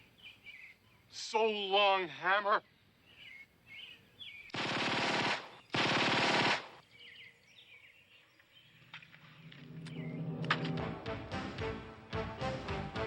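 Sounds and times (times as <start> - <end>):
faint birds chirping: 0.0 - 4.6, 5.4 - 5.8, 6.7 - 10.4
automatic gunfire bursts: 4.5 - 6.8.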